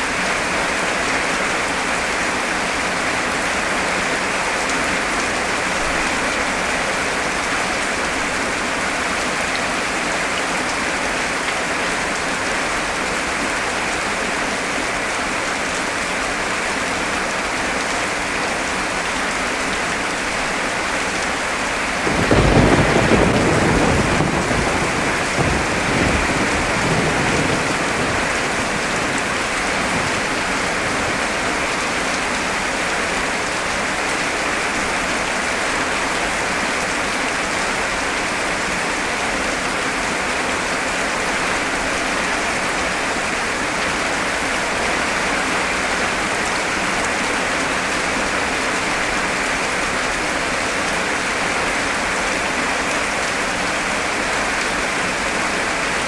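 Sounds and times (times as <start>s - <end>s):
heavy rain: 0.0s - 56.0s
thunder rumbling: 22.0s - 31.4s.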